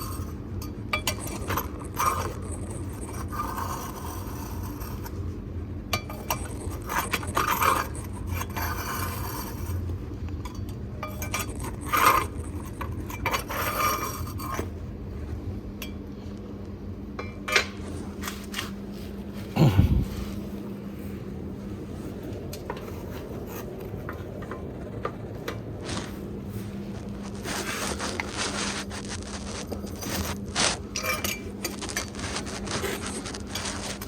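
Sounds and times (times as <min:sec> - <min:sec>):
tool scraping wood ash: 0:25.8 - 0:34.0.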